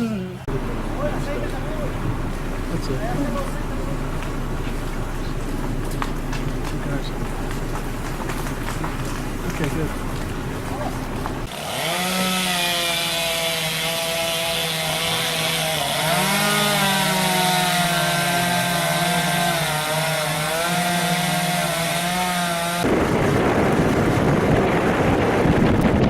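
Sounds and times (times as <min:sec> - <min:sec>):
chainsaw running: 0:11.1 - 0:24.6
wind buffeting microphone: 0:22.8 - 0:26.0.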